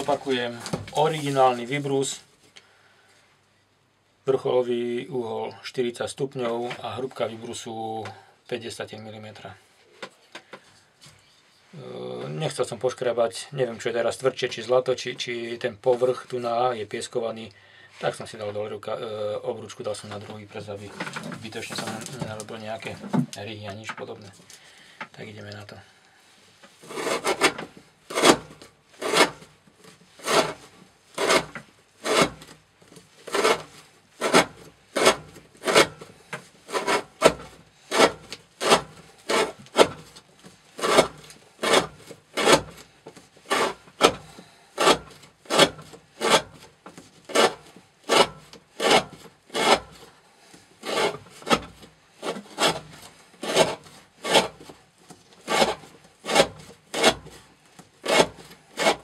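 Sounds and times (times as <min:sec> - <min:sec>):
knife blade cutting rope: 0:26.8 - 0:29.5, 0:30.2 - 0:32.6, 0:33.3 - 0:36.1, 0:36.7 - 0:40.1, 0:40.8 - 0:42.9, 0:43.5 - 0:46.7, 0:47.3 - 0:50.0, 0:50.8 - 0:54.7, 0:55.5 - 0:57.4, 0:58.0 - 0:59.0.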